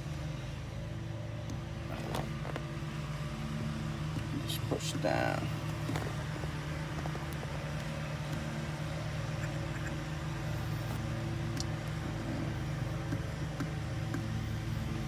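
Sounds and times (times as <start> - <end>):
car engine idling: 0.0 - 15.0.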